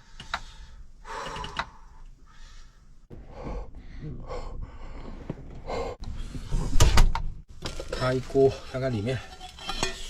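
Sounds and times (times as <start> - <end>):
person breathing hard: 0.0 - 6.8.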